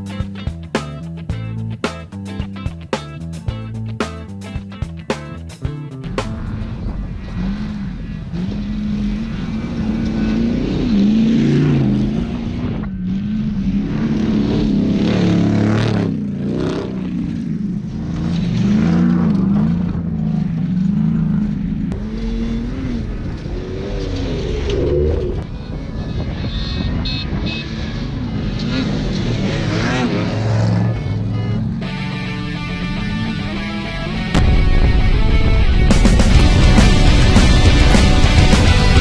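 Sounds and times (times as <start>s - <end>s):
engine revving hard: 6.0s - 17.4s, 18.0s - 25.5s, 26.4s - 34.6s.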